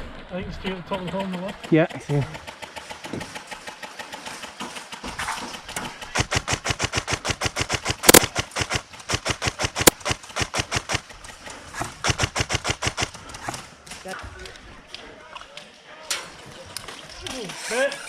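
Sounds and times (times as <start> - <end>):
airsoft rifle firing full-auto: 5.9 - 11.2, 12.0 - 13.3.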